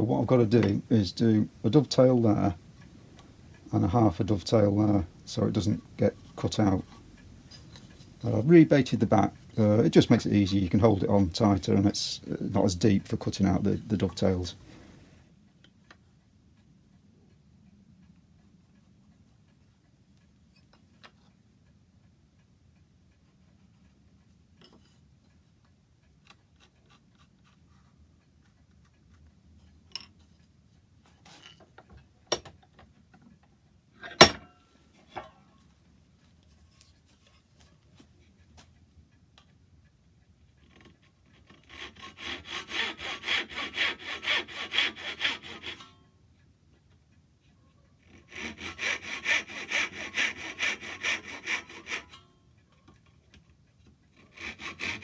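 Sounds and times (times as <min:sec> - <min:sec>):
hand saw cutting wood: 0:00.1 - 0:14.9, 0:41.3 - 0:46.0, 0:48.1 - 0:52.2, 0:54.2 - 0:55.0
knocks of wood workpiece: 0:34.1 - 0:34.5.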